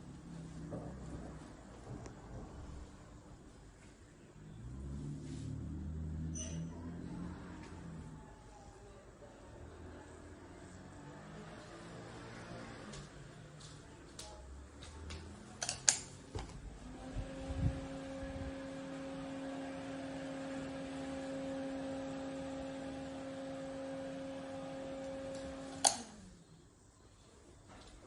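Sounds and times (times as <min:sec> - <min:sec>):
electrical hum: 0:14.6 - 0:28.0.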